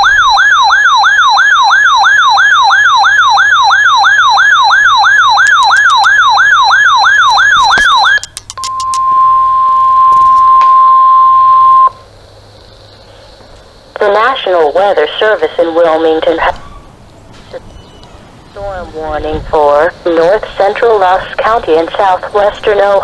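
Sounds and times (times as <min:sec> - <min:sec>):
electronic yelp siren: 0:00.0 - 0:12.1.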